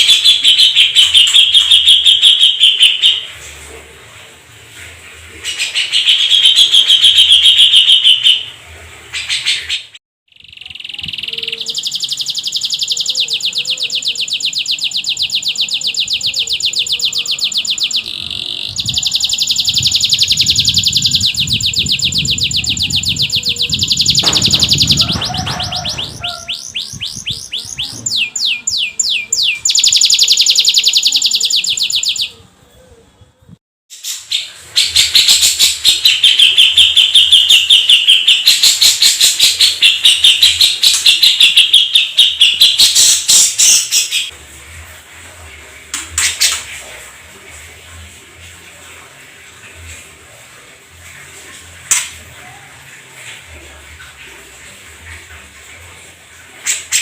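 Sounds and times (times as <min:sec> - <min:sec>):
canary trilling: 0:05.6 - 0:08.5, 0:09.1 - 0:32.4.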